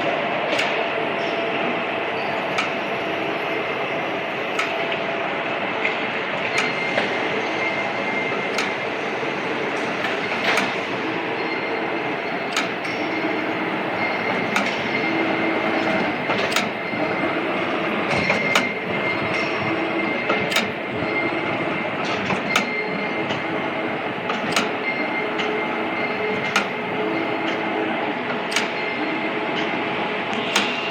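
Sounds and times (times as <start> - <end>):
machinery running: 0.0 - 30.9.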